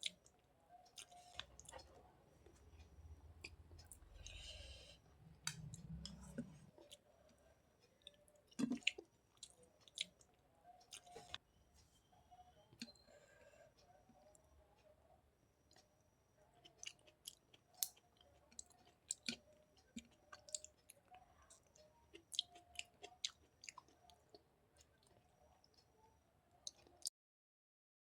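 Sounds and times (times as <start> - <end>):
person chewing food: 0.9 - 4.9, 8.0 - 10.3, 16.6 - 25.8, 26.6 - 27.1.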